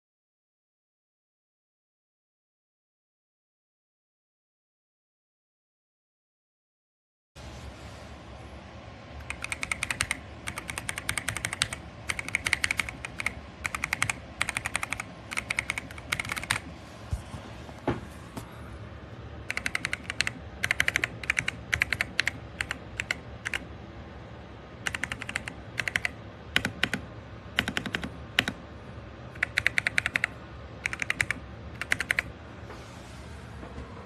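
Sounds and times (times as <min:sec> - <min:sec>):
typing on mechanical keyboard: 0:09.2 - 0:16.7, 0:19.5 - 0:23.7, 0:24.8 - 0:28.6, 0:29.3 - 0:32.3.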